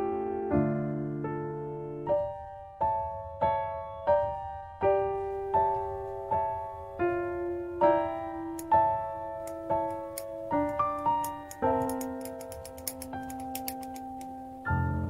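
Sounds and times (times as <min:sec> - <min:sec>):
slow gentle piano melody: 0:00.0 - 0:15.0.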